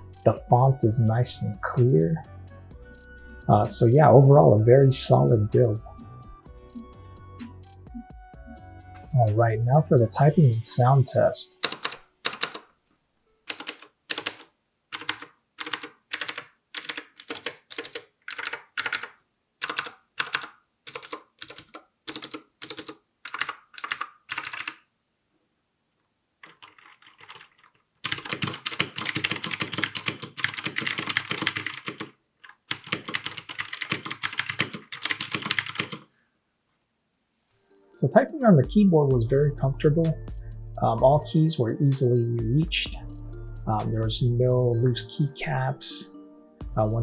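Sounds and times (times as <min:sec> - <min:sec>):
clicky mechanical keyboard typing: 0:11.6 - 0:12.7, 0:13.5 - 0:24.8, 0:26.4 - 0:36.1.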